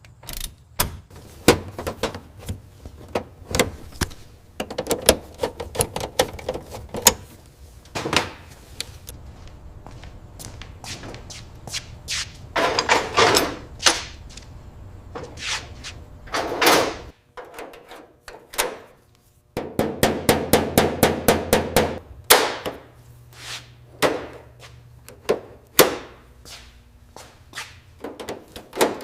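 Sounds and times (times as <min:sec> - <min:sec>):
metal clicks and knocks: 0:04.6 - 0:07.2.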